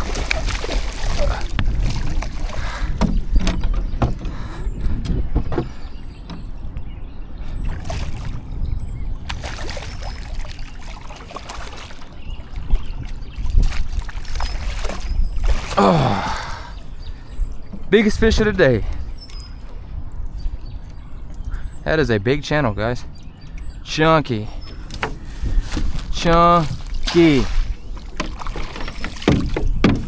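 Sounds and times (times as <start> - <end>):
knocks and clatter of handling: 0.1 - 4.4, 28.1 - 30.0.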